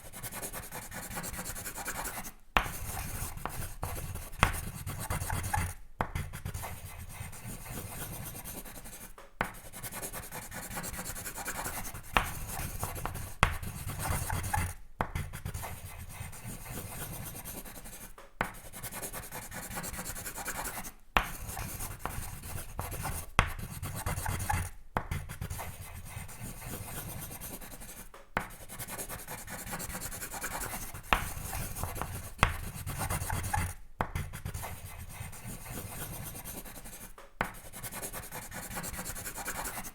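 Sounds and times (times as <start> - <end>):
drawing tool scratching on paper: 0.0 - 39.9
taps on paper: 2.6 - 6.4, 9.0 - 9.7, 12.0 - 15.4, 18.1 - 18.6, 21.2 - 25.4, 28.1 - 28.6, 30.6 - 34.7, 37.1 - 37.7.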